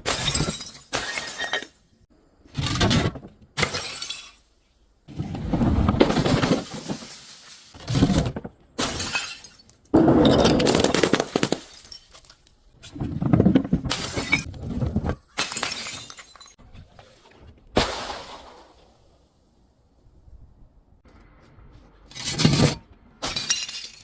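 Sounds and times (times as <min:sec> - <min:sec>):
glass bottles shattering: 0:00.0 - 0:01.8, 0:03.6 - 0:04.5, 0:08.8 - 0:12.4, 0:13.8 - 0:14.5, 0:15.4 - 0:16.6, 0:22.2 - 0:24.0.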